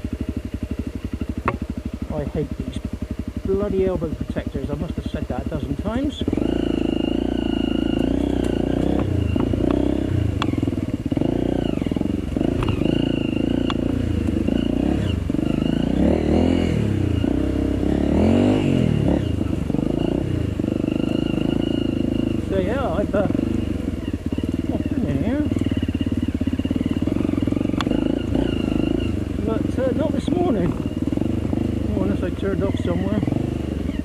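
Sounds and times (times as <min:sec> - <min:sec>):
motorcycle engine revving: 0:00.0 - 0:34.0
sharp clattering knocks: 0:01.4 - 0:01.7.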